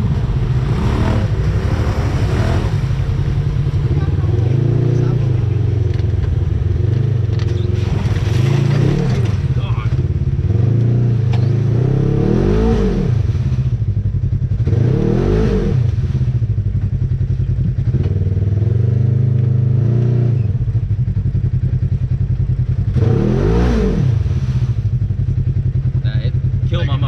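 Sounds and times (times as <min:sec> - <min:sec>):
off-road vehicle engine revving: 0:00.0 - 0:27.0.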